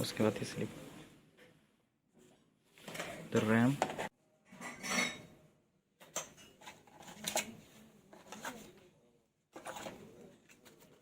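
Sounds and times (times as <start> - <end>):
laptop parts clicking and clattering: 6.0 - 8.8, 9.5 - 11.0.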